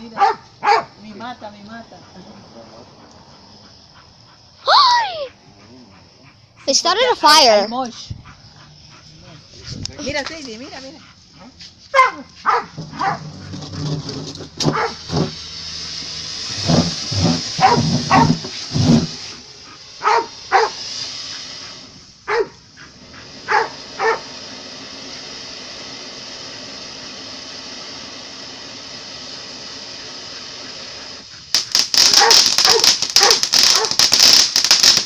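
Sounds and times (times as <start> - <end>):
steady hiss: 0.0 - 35.0
dog barking: 0.1 - 1.0, 11.4 - 13.3, 14.7 - 15.0, 17.6 - 18.4, 20.0 - 20.8, 22.3 - 22.6, 23.5 - 24.2, 32.1 - 34.0.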